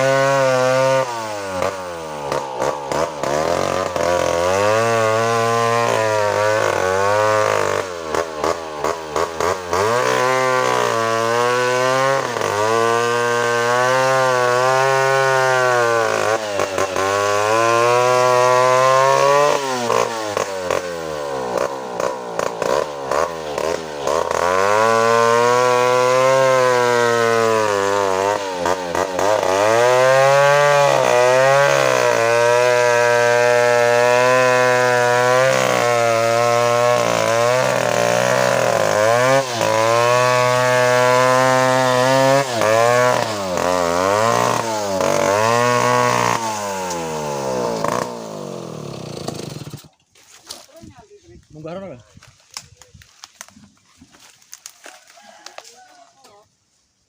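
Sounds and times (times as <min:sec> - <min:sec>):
chainsaw cutting wood: 0:00.0 - 0:51.1, 0:52.2 - 0:56.4.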